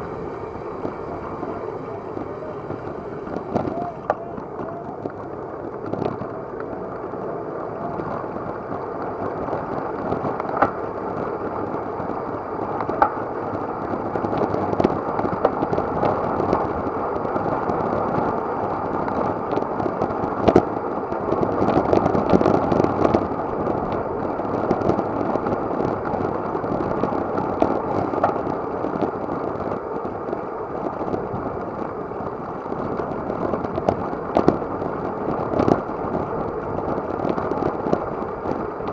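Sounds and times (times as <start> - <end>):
bicycle road noise: 0.0 - 38.9
muffled wind rush: 0.0 - 38.9.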